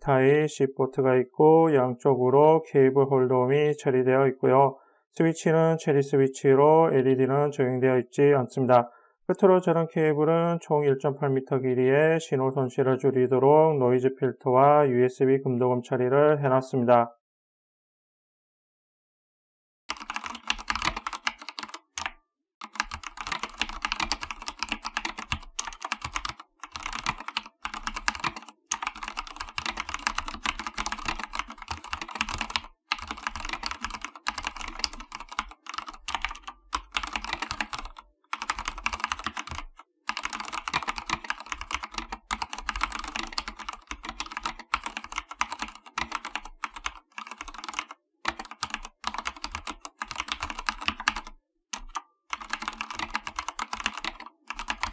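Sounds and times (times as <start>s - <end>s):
mechanical keyboard typing: 19.9s - 54.9s.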